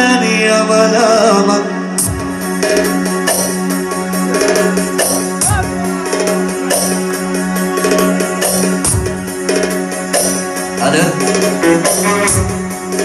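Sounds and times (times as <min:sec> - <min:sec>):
tambourine and drum beats: 0:04.4 - 0:07.0.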